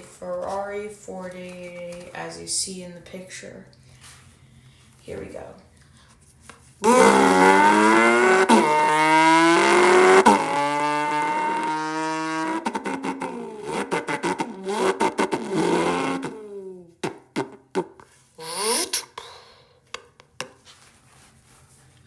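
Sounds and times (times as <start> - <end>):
person imitating engine revving: 6.8 - 17.6, 18.4 - 19.6.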